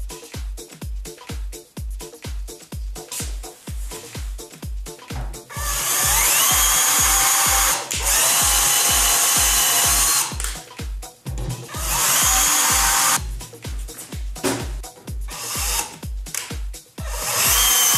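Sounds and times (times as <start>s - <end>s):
background music with steady beat: 0.0s - 17.9s
power drill whining: 5.5s - 10.4s, 11.7s - 13.2s, 15.4s - 16.0s, 17.0s - 17.9s.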